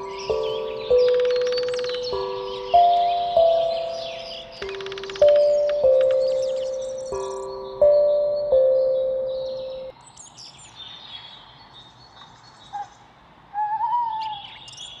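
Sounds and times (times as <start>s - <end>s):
tongue drum note ringing: 0.0s - 9.9s
wavering whistled bird call: 0.0s - 9.9s
birds chirping and trilling: 0.0s - 15.0s.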